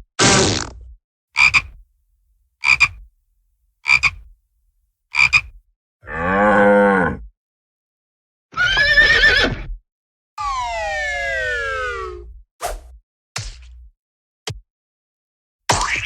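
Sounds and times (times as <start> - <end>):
cartoon frog croaks: 1.4 - 1.7, 2.6 - 3.0, 3.8 - 4.2, 5.1 - 5.5.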